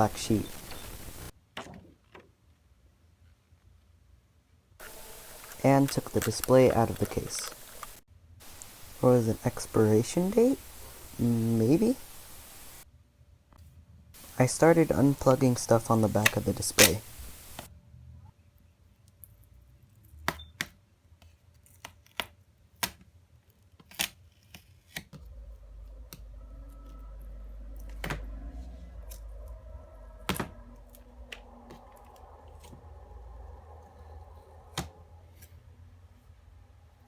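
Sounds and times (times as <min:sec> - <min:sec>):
low rumble: 0:25.2 - 0:34.7.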